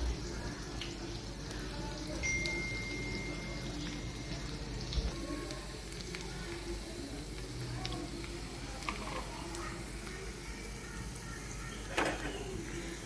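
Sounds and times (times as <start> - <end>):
faint voices: 0.0 - 13.0
oil sizzling in a pan: 0.0 - 13.0
thin high tone: 2.2 - 4.4.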